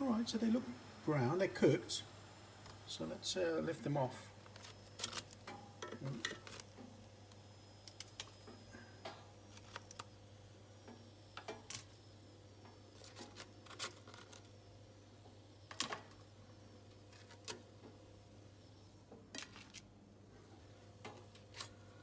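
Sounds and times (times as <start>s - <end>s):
steady low hum: 0.0s - 13.1s.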